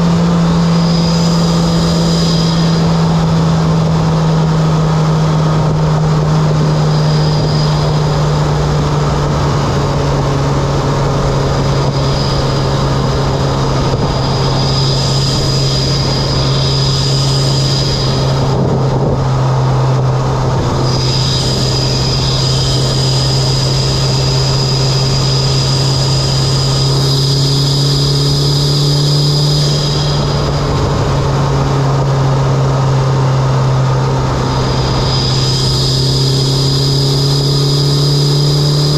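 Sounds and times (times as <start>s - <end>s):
thin high turbo whistle: 0.0s - 4.4s, 5.6s - 18.7s, 20.7s - 30.9s, 34.2s - 38.9s
car engine droning at cruise: 0.0s - 38.9s.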